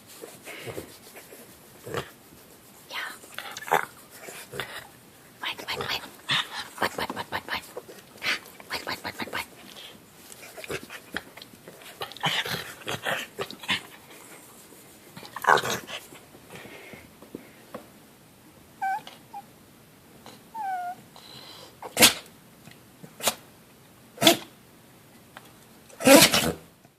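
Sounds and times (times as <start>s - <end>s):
dog grumbling: 15.3s - 16.0s, 26.0s - 26.6s
dog whining: 18.8s - 19.5s, 20.3s - 21.0s, 26.0s - 26.6s.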